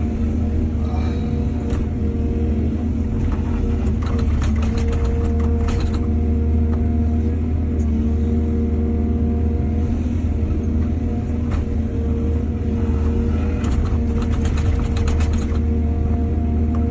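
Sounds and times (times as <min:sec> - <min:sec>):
excavator diesel engine running: 0:00.0 - 0:16.9
clicks and clatters: 0:03.2 - 0:06.1, 0:13.5 - 0:15.7.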